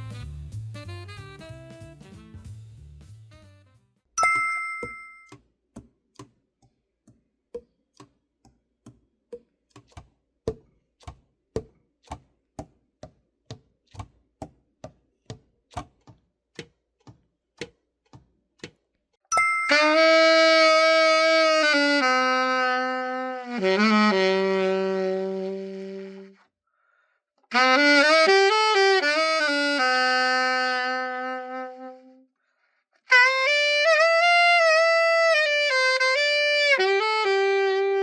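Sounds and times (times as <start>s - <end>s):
music: 0.0s - 4.2s, 19.6s - 26.4s, 27.5s - 32.2s, 33.1s - 38.0s
bell-like ding: 4.2s - 5.3s, 19.3s - 20.0s.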